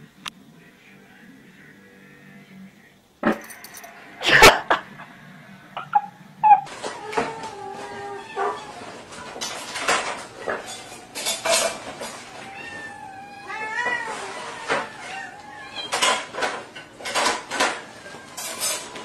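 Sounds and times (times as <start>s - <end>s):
cat meowing: 6.0s - 9.0s, 12.3s - 16.0s.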